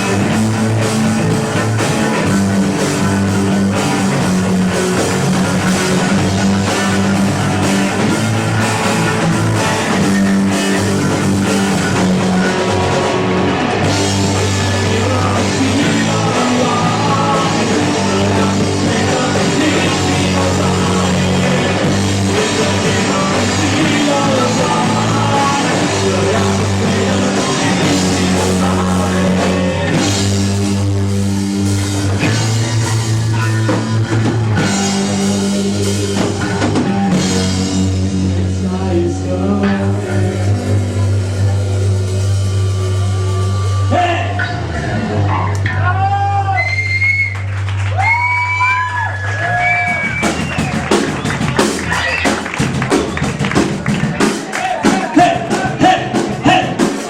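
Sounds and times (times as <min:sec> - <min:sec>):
drum kit: 0:00.0 - 0:46.1, 0:47.4 - 0:57.0
bass guitar: 0:00.0 - 0:57.0
distorted electric guitars: 0:00.0 - 0:57.0.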